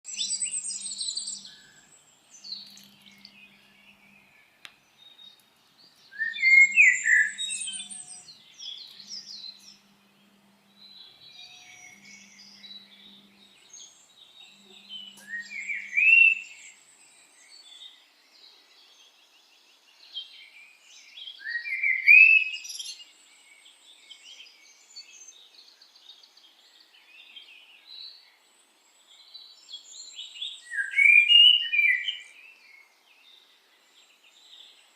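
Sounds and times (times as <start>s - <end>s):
faint low hum: 0.1s - 18.7s
loud rising bird song phrase: 0.1s - 34.8s
birds chirping and singing: 0.1s - 34.9s.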